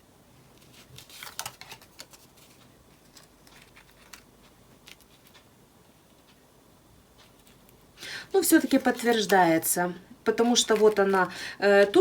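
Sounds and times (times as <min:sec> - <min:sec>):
cards clicking and rustling: 0:00.6 - 0:05.5, 0:08.4 - 0:09.7, 0:10.4 - 0:11.3.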